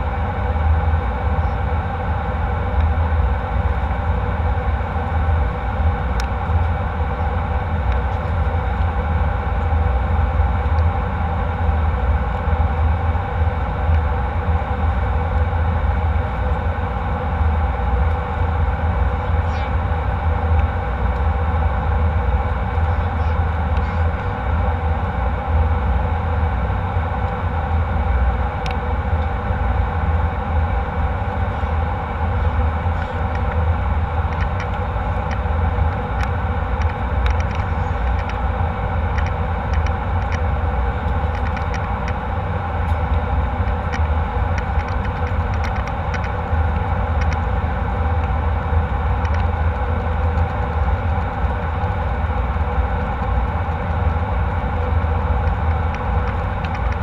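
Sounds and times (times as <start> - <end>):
jet cabin engine rumble: 0.0 - 57.0
faint light ticks: 49.2 - 51.6.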